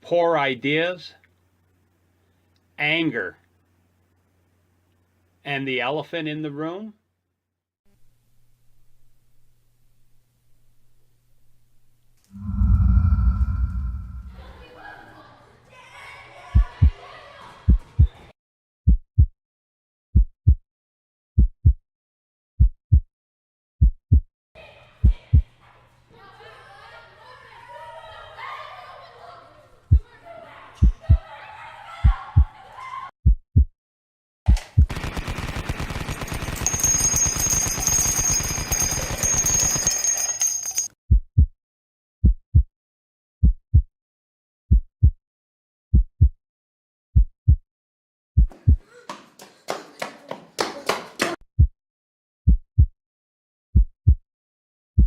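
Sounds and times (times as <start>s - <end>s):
heartbeat double thumps: 16.6s - 17.0s, 17.7s - 18.1s, 18.9s - 19.3s, 20.2s - 20.6s, 21.4s - 21.8s, 22.6s - 23.1s, 23.8s - 24.2s, 30.8s - 31.2s, 32.0s - 32.5s, 33.2s - 33.7s, 34.5s - 34.9s, 41.1s - 41.5s, 42.2s - 42.7s, 43.4s - 43.9s, 44.7s - 45.2s, 45.9s - 46.4s, 47.2s - 47.6s, 48.4s - 48.8s, 52.5s - 52.9s, 53.8s - 54.2s.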